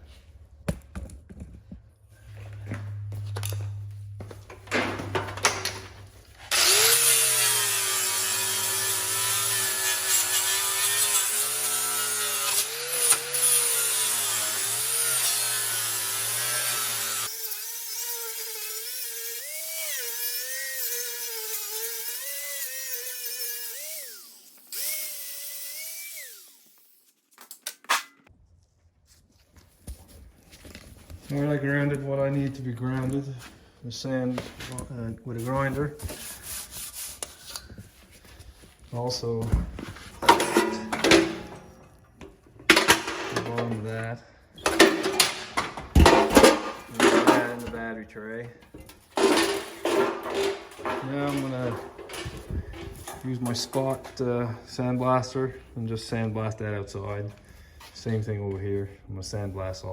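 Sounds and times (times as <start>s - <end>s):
grinder whining on metal: 2.9s - 27.1s, 49.2s - 54.0s.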